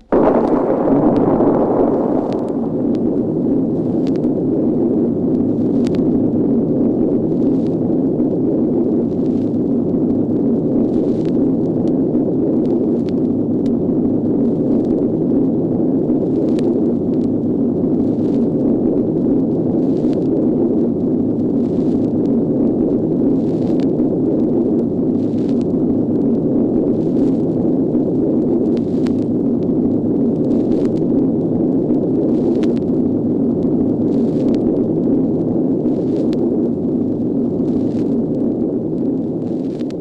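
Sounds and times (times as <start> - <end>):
explosion rumble: 0.0 - 8.0
crackles: 0.0 - 40.0.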